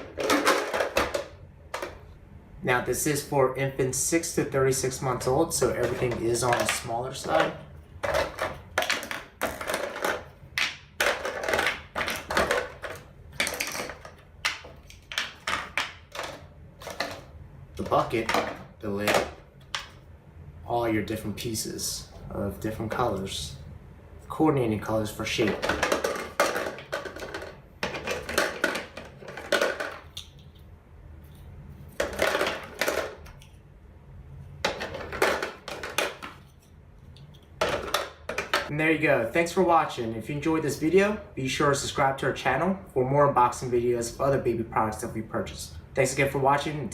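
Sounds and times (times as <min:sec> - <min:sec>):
plastic toy blocks clacking: 0:00.0 - 0:02.0, 0:05.8 - 0:19.9, 0:25.4 - 0:30.4, 0:32.0 - 0:33.5, 0:34.6 - 0:36.5.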